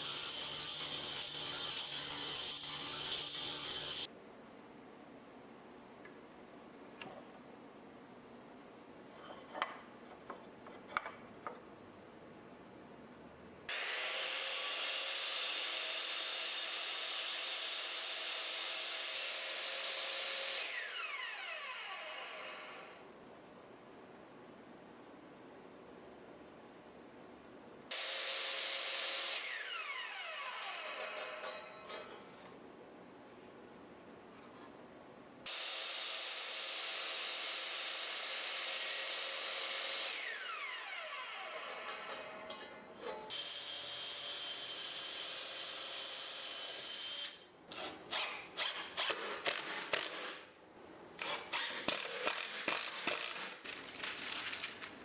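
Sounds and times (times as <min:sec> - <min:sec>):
woodworking power tool whirring: 0:13.7 - 0:22.9, 0:27.9 - 0:31.0, 0:35.5 - 0:41.8.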